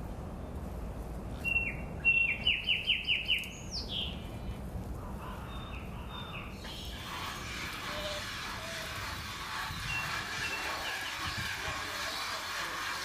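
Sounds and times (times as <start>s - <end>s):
bird chirping: 1.4s - 4.6s, 5.2s - 12.4s.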